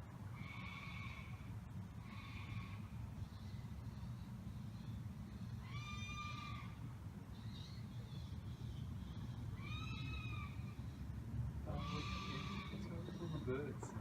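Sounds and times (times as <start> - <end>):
low background hum: 0.0 - 14.0
high-pitched animal calls: 0.3 - 3.6, 5.4 - 6.8, 9.2 - 11.0, 11.7 - 13.6.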